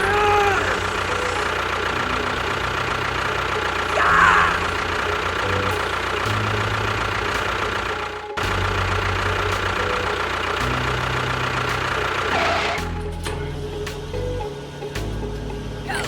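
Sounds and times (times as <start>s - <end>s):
vehicle engine running: 0.0s - 16.0s
high squeal: 12.3s - 13.6s.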